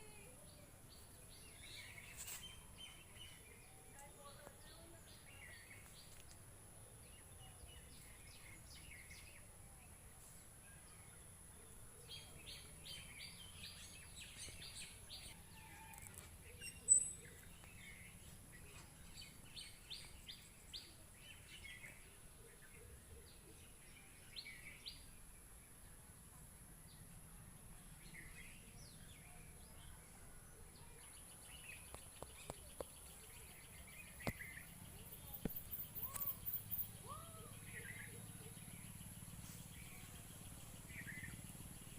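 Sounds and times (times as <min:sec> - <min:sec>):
songbirds chirping: 0:00.0 - 0:41.9.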